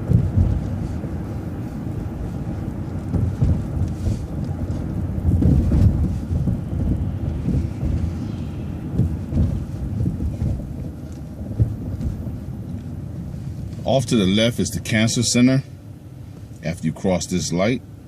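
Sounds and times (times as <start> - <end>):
small knocks and bumps: 0.0 - 1.0, 2.5 - 13.9
vehicle rumble from inside cabin: 0.0 - 18.0.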